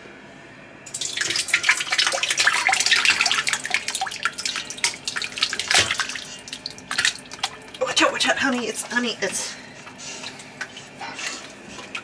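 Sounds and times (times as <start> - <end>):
liquid splashing and dripping: 0.9 - 9.0, 9.8 - 12.0.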